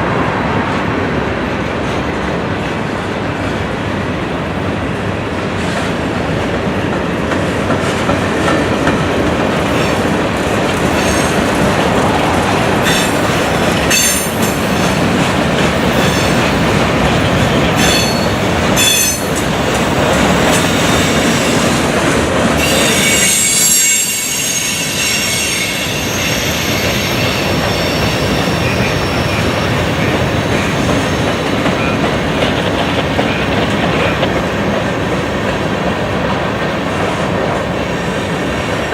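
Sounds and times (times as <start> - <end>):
train wheels clicking over rail joints: 29.7 - 37.6.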